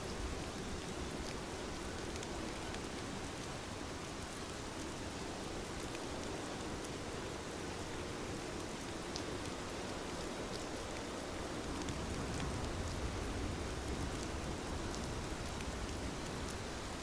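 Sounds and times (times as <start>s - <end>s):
steady rain hiss: 0.0s - 17.0s
sharp raindrop ticks: 5.6s - 8.0s, 8.6s - 17.0s.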